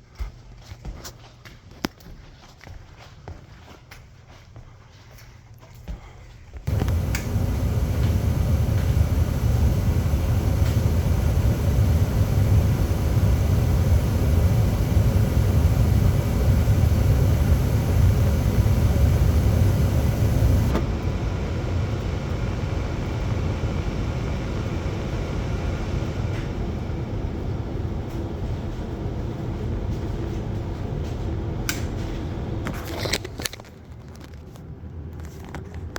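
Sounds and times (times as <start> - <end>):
burner hiss: 6.7 - 26.6
furnace blower rumbling: 6.7 - 33.2.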